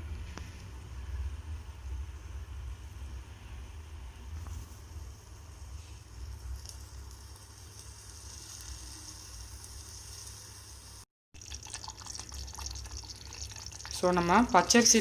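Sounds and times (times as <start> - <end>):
gravy bubbling in a pan: 5.6 - 15.0.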